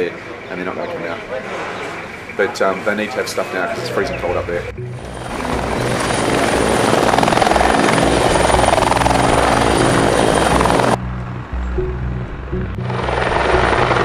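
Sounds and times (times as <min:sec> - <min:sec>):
helicopter rotor and engine: 0:04.8 - 0:11.0, 0:12.8 - 0:14.0.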